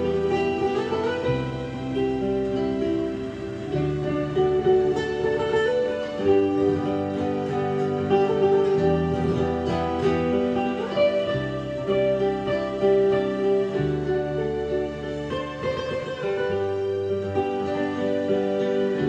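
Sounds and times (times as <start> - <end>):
plucked acoustic guitar music: 0.0 - 19.0.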